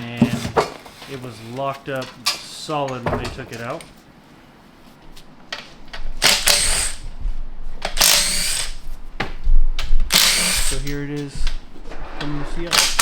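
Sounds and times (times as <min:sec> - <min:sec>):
power tool bursts: 0:06.2 - 0:07.0, 0:08.0 - 0:08.8, 0:10.1 - 0:10.9.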